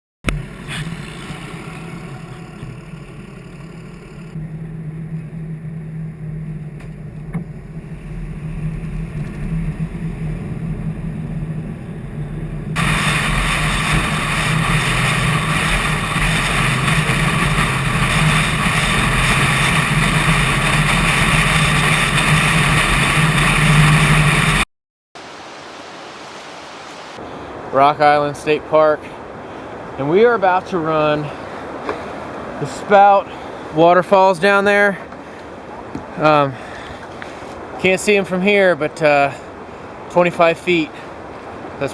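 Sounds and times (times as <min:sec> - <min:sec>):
vehicle engine humming: 0:00.2 - 0:24.6
loud rushing noise: 0:12.6 - 0:24.6.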